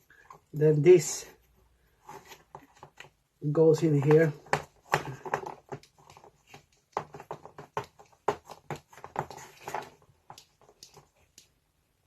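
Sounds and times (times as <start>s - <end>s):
small clicks and taps: 4.0s - 11.6s.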